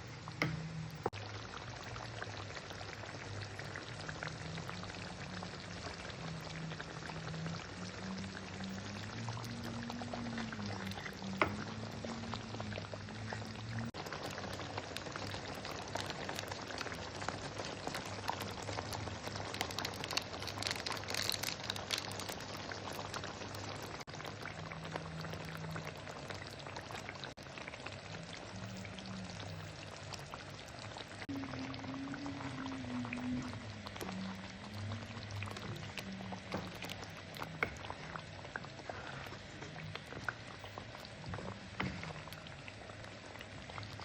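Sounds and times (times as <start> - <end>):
sharp pop of frying food: 0.4 - 0.7.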